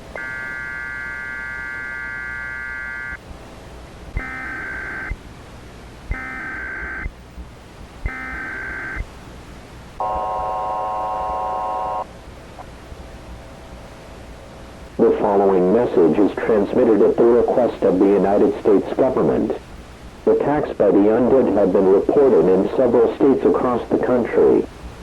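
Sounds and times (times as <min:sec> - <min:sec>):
data tone bursts: 0:04.2 - 0:05.2, 0:06.1 - 0:07.1, 0:08.0 - 0:09.1, 0:10.0 - 0:12.1
steady electronic tone: 0:04.2 - 0:05.2, 0:06.1 - 0:07.1, 0:08.0 - 0:09.1, 0:10.0 - 0:12.1
lower-pitched attention tone: 0:10.0 - 0:12.0.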